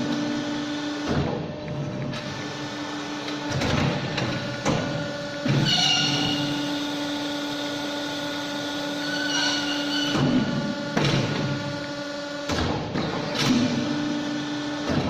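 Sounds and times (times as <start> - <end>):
machine motor hum: 0.0 - 15.0
high machine squeal: 5.5 - 7.0, 8.9 - 10.6.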